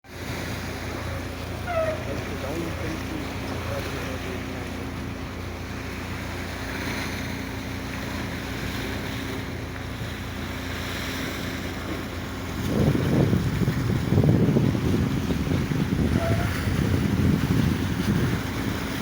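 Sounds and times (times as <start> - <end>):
sea water rushing: 0.0 - 19.0
low engine drone: 0.1 - 19.0
wind buffeting microphone: 0.2 - 19.0
wind rushing: 12.6 - 18.9.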